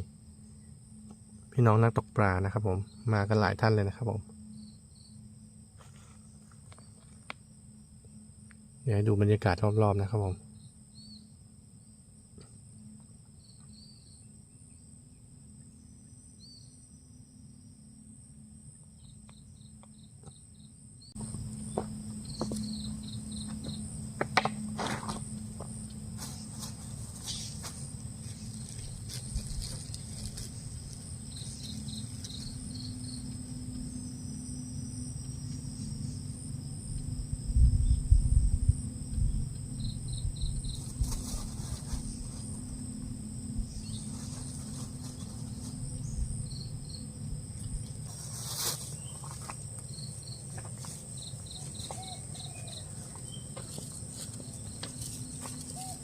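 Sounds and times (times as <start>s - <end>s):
insect chirps: 0.0s - 56.0s
insects buzzing: 0.0s - 56.0s
wind buffeting microphone: 37.4s - 41.5s.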